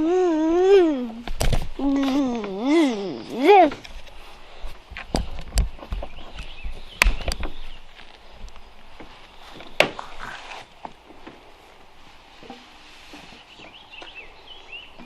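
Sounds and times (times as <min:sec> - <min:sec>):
toddler vocalizing: 0:01.8 - 0:03.8.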